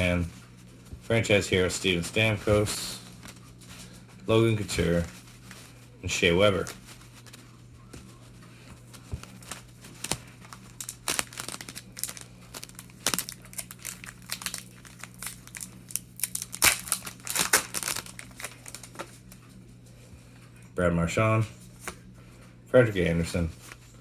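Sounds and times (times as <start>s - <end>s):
low electrical hum: 0.0s - 24.0s
wrapper crinkling and tearing: 9.2s - 19.4s.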